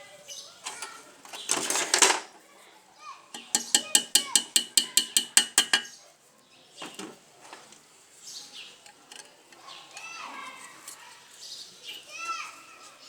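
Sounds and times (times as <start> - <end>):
faint scattered knocks: 3.3 - 6.0, 6.8 - 7.9, 8.8 - 11.1
rapid metal-on-metal strikes: 3.4 - 5.9.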